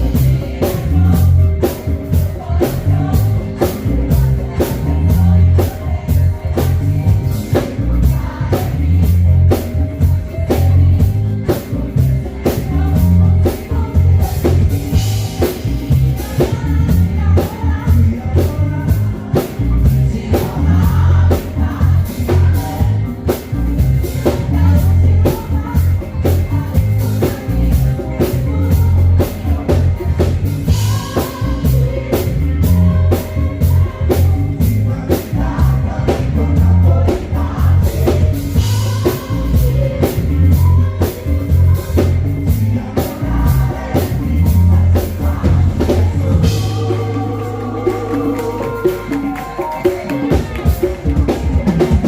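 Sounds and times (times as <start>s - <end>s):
band playing a song: 0.0s - 52.0s
drum kit beat: 0.0s - 52.0s
person singing: 0.0s - 52.0s.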